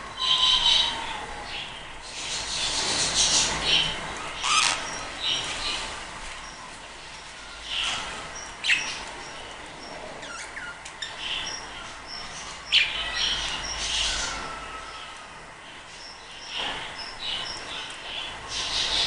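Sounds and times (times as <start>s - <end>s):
budgerigars chirping and chattering: 0.2s - 5.8s, 7.6s - 15.1s, 16.0s - 19.0s.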